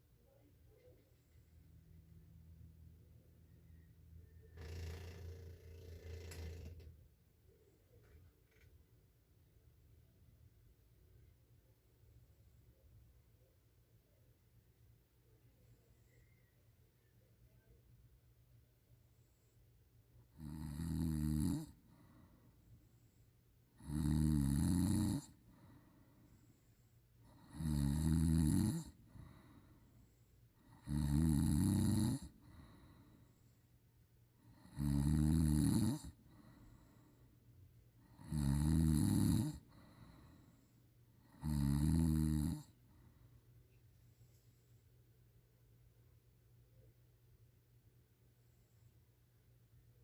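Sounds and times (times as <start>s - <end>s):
person snoring: 4.6s - 6.9s, 20.3s - 22.2s, 23.8s - 25.8s, 27.2s - 29.6s, 30.6s - 33.1s, 34.4s - 37.1s, 38.0s - 40.4s, 41.2s - 42.8s.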